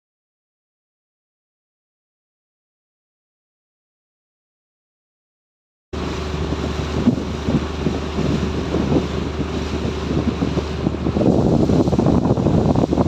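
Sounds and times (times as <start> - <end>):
low engine hum: 6.0 - 13.0
water noise: 6.0 - 13.0
wind buffeting microphone: 6.0 - 13.0.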